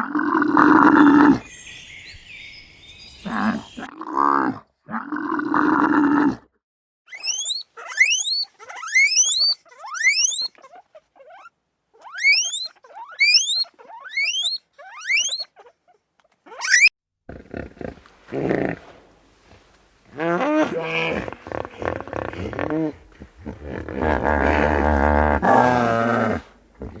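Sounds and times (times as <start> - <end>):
rough noisy animal call: 0.0 - 3.9, 7.1 - 16.9
shrill rising animal whistles: 7.1 - 10.6, 12.0 - 15.6, 16.5 - 16.9.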